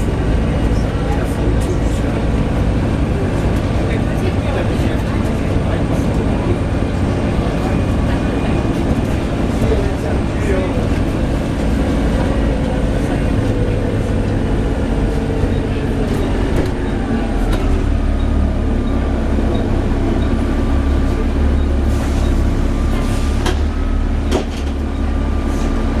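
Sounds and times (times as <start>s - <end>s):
bus diesel engine rumbling: 0.0s - 26.0s.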